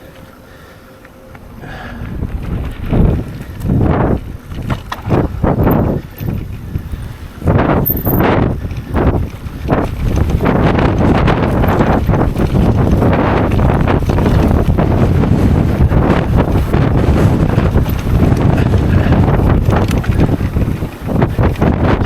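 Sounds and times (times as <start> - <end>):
wind buffeting microphone: 1.4 - 22.0.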